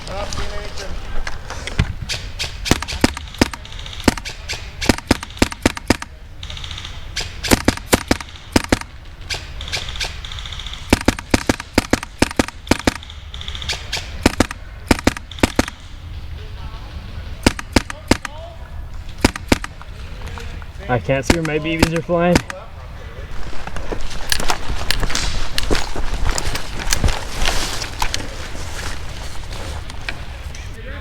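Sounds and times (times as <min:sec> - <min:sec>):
airsoft gun popping shots: 0:01.9 - 0:16.0, 0:17.4 - 0:18.4, 0:19.1 - 0:19.9, 0:21.0 - 0:22.6.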